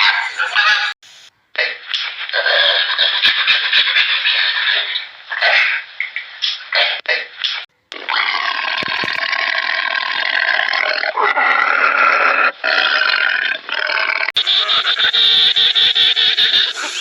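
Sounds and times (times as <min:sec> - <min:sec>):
animal harsh drawn-out calls: 0:08.1 - 0:17.0.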